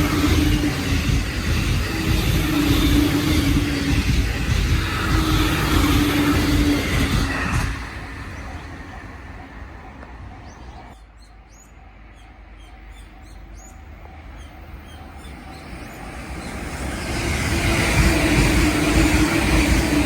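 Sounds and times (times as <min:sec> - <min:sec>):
passing train rumble: 0:00.0 - 0:20.0
songbird chirping: 0:08.0 - 0:16.8.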